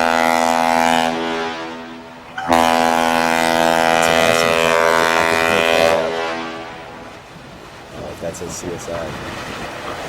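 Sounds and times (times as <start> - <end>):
ship's horn blast: 0.0 - 7.3.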